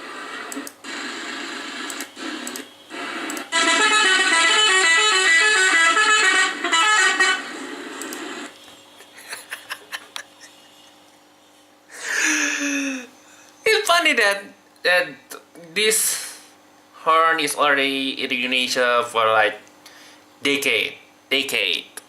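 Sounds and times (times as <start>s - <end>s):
quick clicks: 0.5s - 0.8s, 1.9s - 2.7s
multi-tone bus horn tune: 3.5s - 7.5s.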